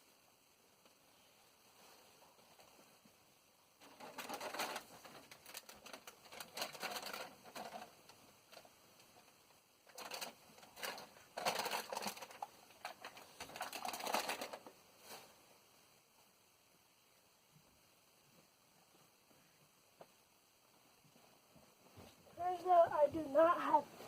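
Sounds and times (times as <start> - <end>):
rummaging clicking and rustling: 3.8 - 8.7, 9.9 - 14.7.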